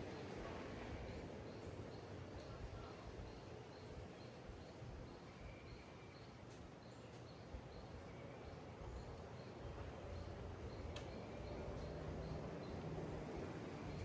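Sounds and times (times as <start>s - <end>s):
low outdoor rumble: 8.7s - 14.0s.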